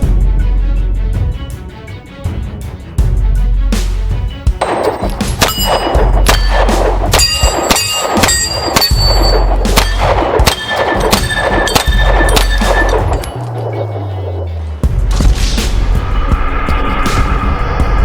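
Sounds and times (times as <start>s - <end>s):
deep bass: 0.0s - 7.2s, 9.0s - 18.0s
metallic clanging percussion: 4.5s - 16.2s.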